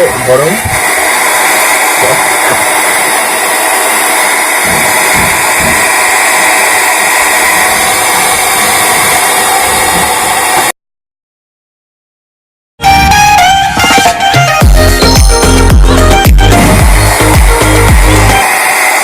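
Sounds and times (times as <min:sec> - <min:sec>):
hair dryer blowing: 0:00.0 - 0:10.8, 0:14.6 - 0:19.0.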